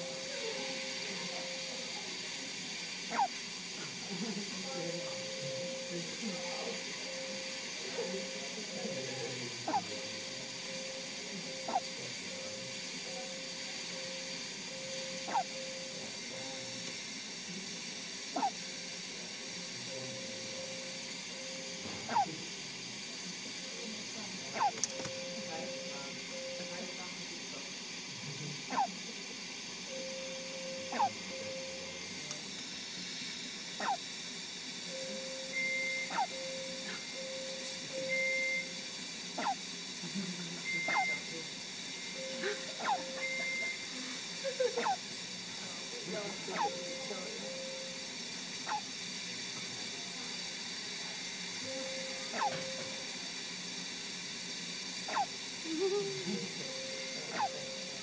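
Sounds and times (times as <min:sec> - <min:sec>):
steady airflow hiss: 0:00.0 - 0:24.5, 0:25.1 - 0:58.0
electronic equipment tones: 0:34.9 - 0:38.8, 0:42.0 - 0:43.9.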